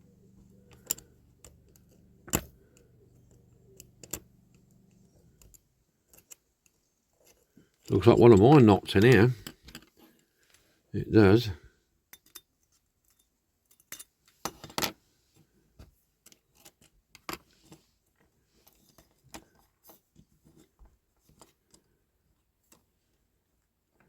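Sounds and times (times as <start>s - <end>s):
metal toy and tools clinking: 12.1s - 14.2s.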